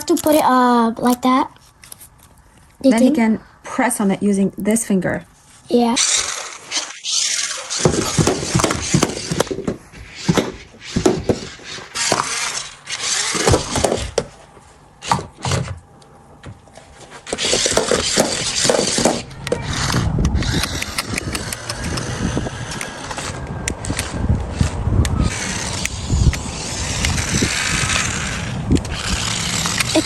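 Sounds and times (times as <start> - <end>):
toy car motors whirring and rattling: 5.7 - 14.3, 16.8 - 30.0.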